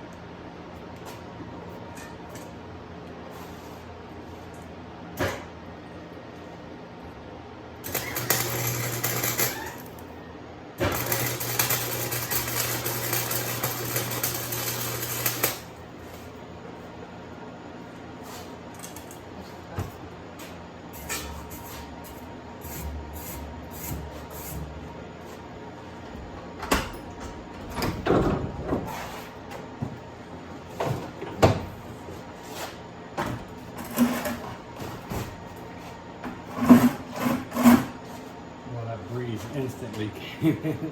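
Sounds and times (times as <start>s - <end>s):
welder buzzing crackle: 7.8s - 10.0s, 10.8s - 15.7s.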